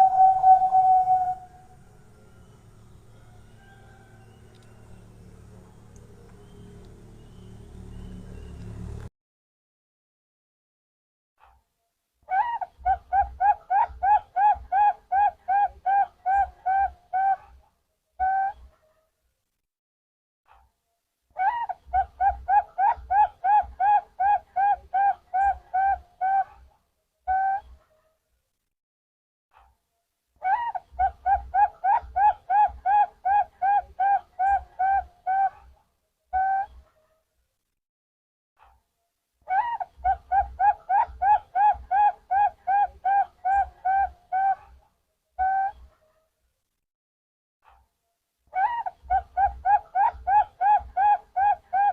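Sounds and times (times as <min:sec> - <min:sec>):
dove cooing: 0:00.0 - 0:01.5, 0:12.9 - 0:17.4, 0:30.5 - 0:35.6, 0:39.5 - 0:44.6, 0:48.6 - 0:51.9.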